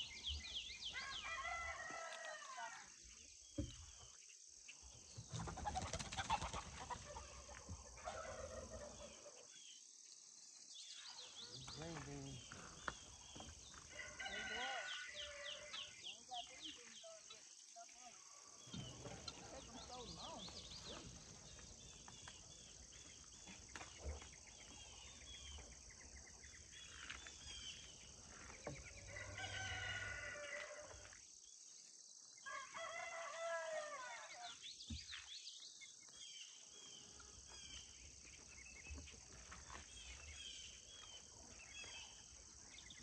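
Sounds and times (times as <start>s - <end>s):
rooster crowing: 1.0s - 2.9s, 13.9s - 16.0s, 29.0s - 31.1s, 32.4s - 34.5s.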